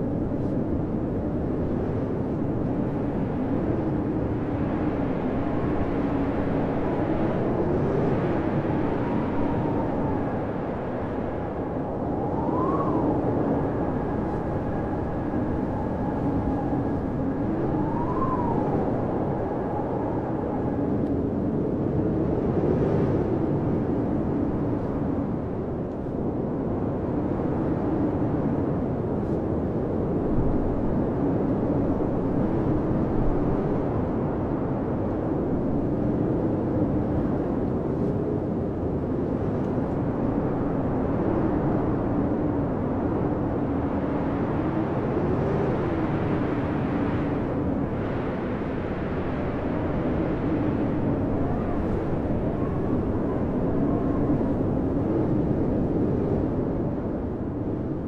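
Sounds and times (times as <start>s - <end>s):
blizzard wind howling: 0.0s - 58.0s.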